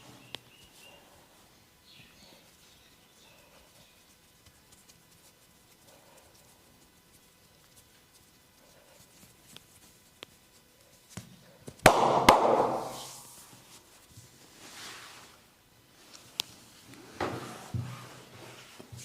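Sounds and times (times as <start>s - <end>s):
soft rustle: 0.0s - 11.6s, 12.9s - 19.0s
loud sharp cracks: 11.8s - 13.2s.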